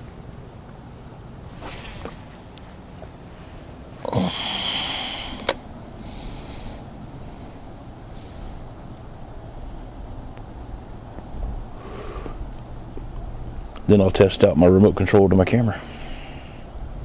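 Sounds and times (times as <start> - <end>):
fishing rod swish: 1.6 - 2.8.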